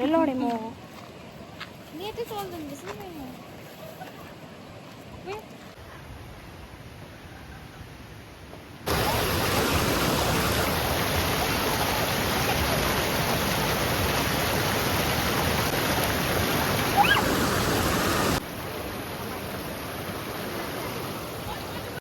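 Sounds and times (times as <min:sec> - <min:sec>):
river water rushing: 0:08.8 - 0:22.0.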